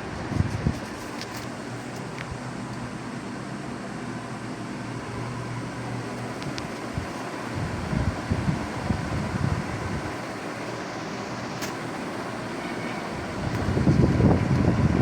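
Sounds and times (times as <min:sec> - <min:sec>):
fan airflow buffeting microphone: 0:00.0 - 0:15.0.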